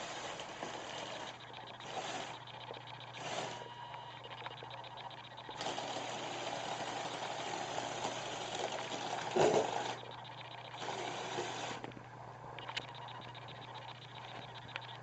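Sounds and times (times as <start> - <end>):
toy electric motor grinding whir: 0.0 - 11.9.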